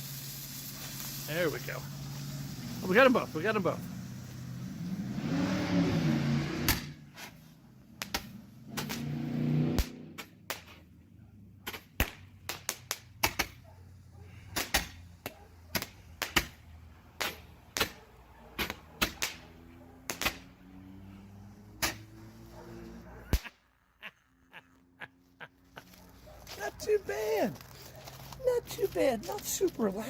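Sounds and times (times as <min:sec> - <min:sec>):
roman candle fireworks banging: 0:00.0 - 0:05.3, 0:06.6 - 0:11.0, 0:11.6 - 0:13.6, 0:14.5 - 0:18.0, 0:18.6 - 0:20.6.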